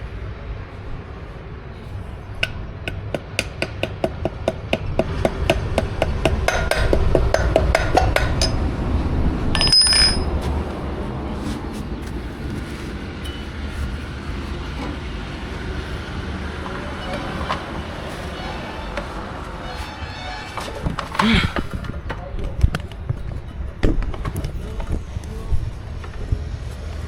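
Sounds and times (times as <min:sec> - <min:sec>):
low workshop hum: 0:00.0 - 0:20.7
hammer tapping on metal: 0:02.4 - 0:08.7, 0:09.6 - 0:10.4
metallic clink with ringing: 0:09.6 - 0:10.4.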